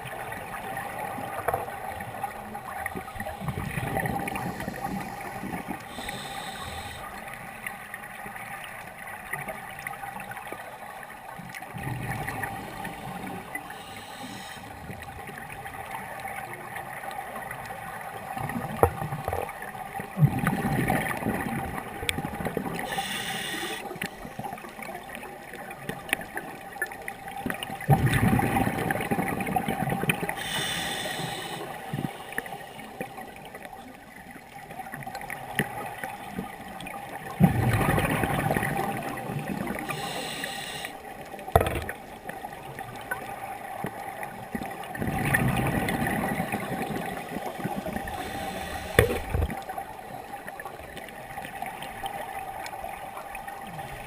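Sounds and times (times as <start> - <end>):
gurgling exhaled bubbles: 0.0 - 6.6, 11.7 - 15.9, 20.1 - 24.6, 27.5 - 32.2, 35.5 - 40.8, 44.8 - 49.9
faint steady hum: 0.0 - 18.9, 19.5 - 54.0
regulator inhalation hiss: 5.9 - 7.2, 13.7 - 14.8, 22.9 - 24.3, 30.4 - 33.0, 39.9 - 41.0, 48.1 - 49.3.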